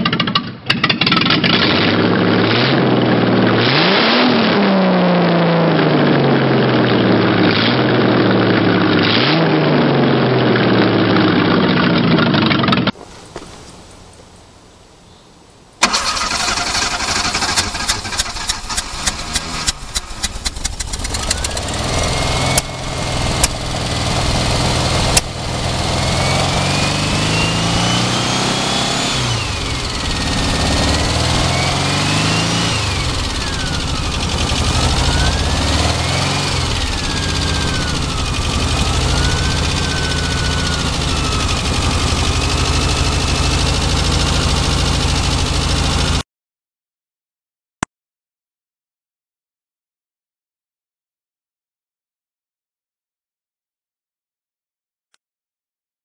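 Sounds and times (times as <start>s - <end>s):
engine whine: 0.0s - 14.9s, 15.8s - 46.2s
engine starting and revving: 0.2s - 13.0s, 15.8s - 46.2s.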